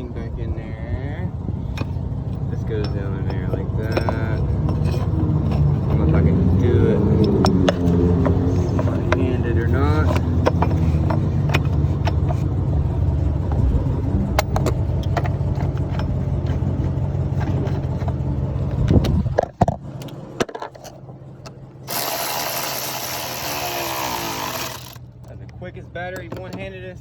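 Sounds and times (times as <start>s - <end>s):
vehicle engine idling: 0.0s - 27.0s
metallic clicks and knocks: 1.7s - 22.0s.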